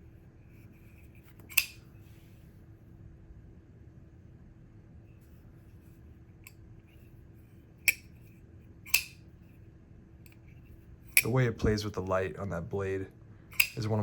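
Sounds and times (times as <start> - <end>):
folding knife clicking: 1.4 - 1.8, 7.8 - 8.1, 8.9 - 9.2, 11.1 - 11.3, 13.5 - 13.8.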